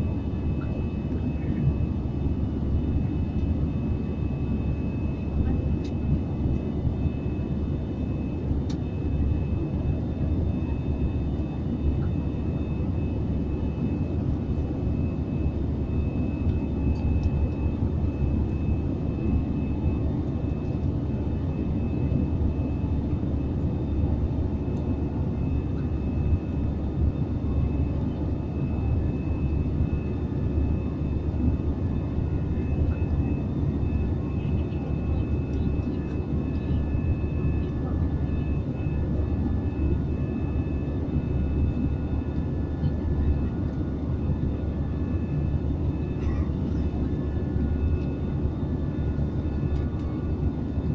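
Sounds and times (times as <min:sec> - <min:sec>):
airliner cabin engine roar: 0:00.0 - 0:50.9.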